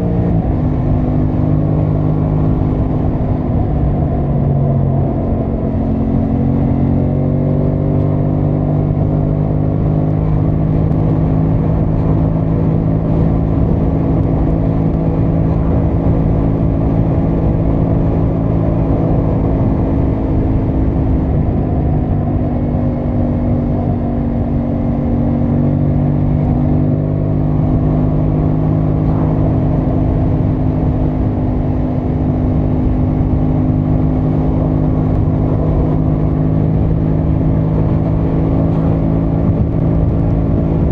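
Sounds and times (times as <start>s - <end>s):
motorcycle engine cruising: 0.0s - 40.9s
wind and road noise: 0.0s - 40.9s.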